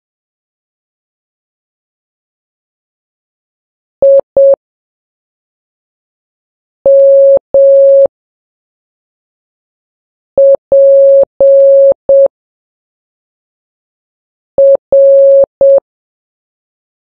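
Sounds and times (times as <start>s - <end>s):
morse code tone beeping: 4.0s - 4.6s, 6.9s - 8.1s, 10.4s - 12.3s, 14.6s - 15.8s.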